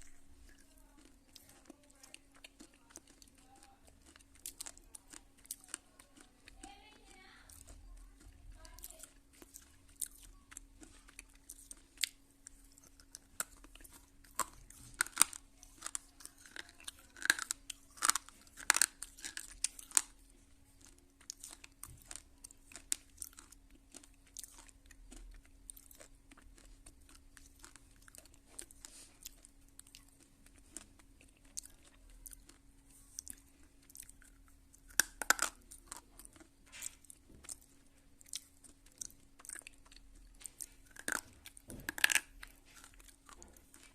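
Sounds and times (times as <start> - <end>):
faint steady hum: 0.0 - 43.9.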